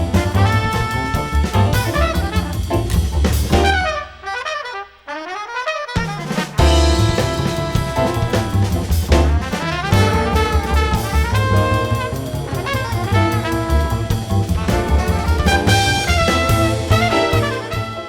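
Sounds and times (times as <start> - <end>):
walking bass line: 0.0 - 4.0, 6.6 - 18.0
brass horns: 0.0 - 18.0
drum kit: 0.0 - 18.0.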